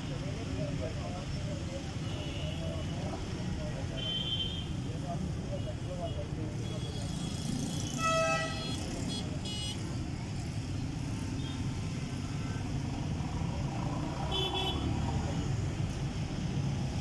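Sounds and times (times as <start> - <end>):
road traffic rumble: 0.0 - 17.0
vehicle horn honking: 8.0 - 9.8.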